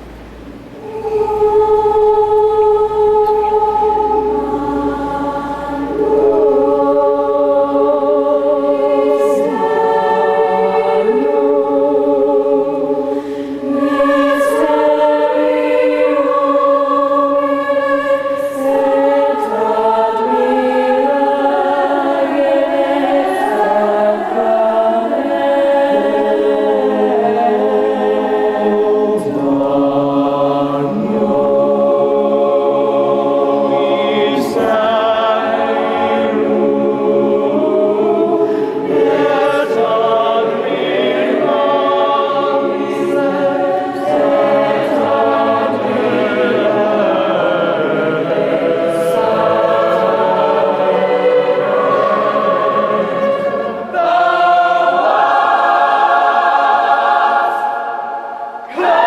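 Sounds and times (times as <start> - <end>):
choir singing: 0.0 - 59.0.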